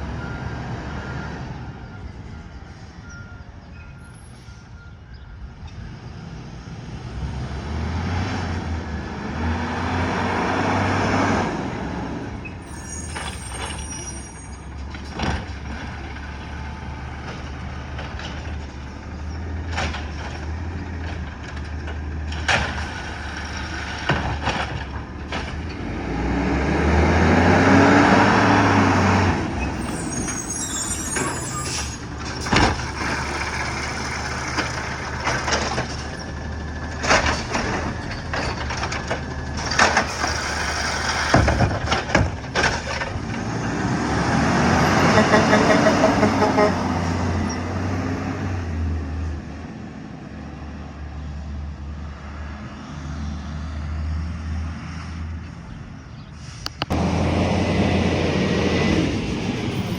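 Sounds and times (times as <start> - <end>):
garbage truck engine revving: 6.2 - 12.4, 19.3 - 50.0, 56.9 - 59.9
air brakes hissing: 29.6 - 32.2.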